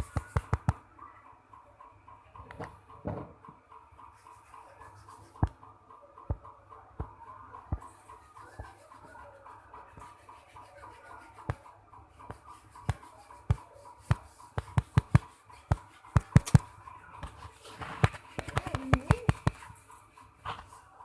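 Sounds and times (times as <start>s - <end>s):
sharp clicks and knocks: 0.0s - 1.0s, 2.1s - 3.9s, 12.2s - 19.8s.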